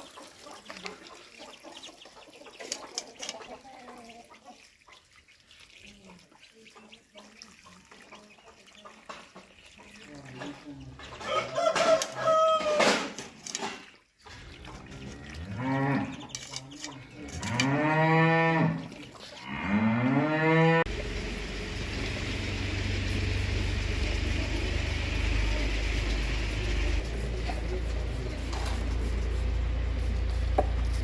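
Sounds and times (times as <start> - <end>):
rooster crowing: 11.2 - 13.0
cattle mooing: 14.9 - 16.2, 17.2 - 18.8, 19.4 - 20.9.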